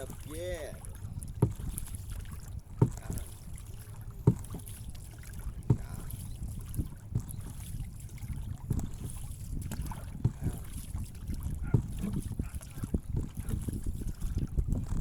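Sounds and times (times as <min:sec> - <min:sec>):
wind rumble on microphone: 0:00.0 - 0:15.0
dull knocks: 0:01.3 - 0:01.8, 0:02.8 - 0:03.2, 0:04.2 - 0:04.7, 0:05.6 - 0:06.1, 0:06.7 - 0:07.6, 0:08.6 - 0:13.7.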